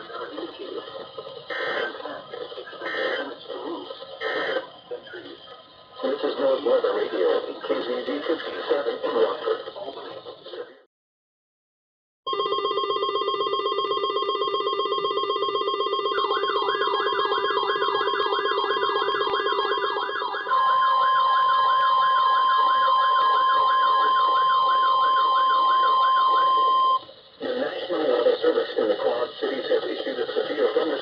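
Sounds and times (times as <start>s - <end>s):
steady alarm tone: 1.5s - 2.0s, 4.2s - 4.7s, 12.3s - 27.1s
steady electronic beeping buzz: 1.5s - 2.0s, 4.2s - 4.7s, 12.3s - 27.1s
electronic siren wail: 12.3s - 27.0s.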